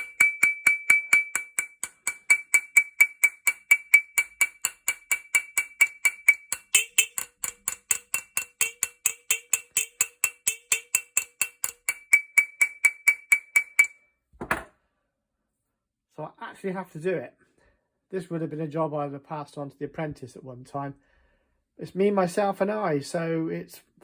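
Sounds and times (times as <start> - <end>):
hammer tapping on steel: 0.0 - 14.0.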